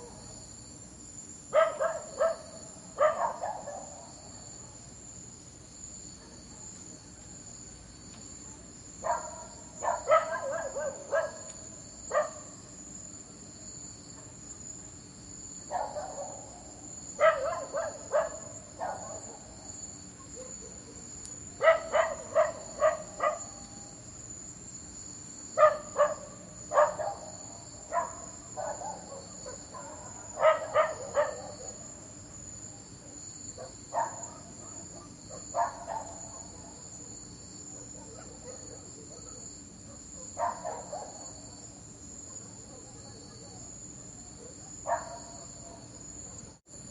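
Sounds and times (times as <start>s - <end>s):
insects chirring: 0.0s - 46.9s
dog barking: 1.5s - 4.8s, 6.2s - 6.8s, 8.4s - 12.6s, 15.7s - 19.5s, 20.2s - 23.8s, 25.6s - 32.0s, 33.6s - 41.4s, 42.2s - 46.6s.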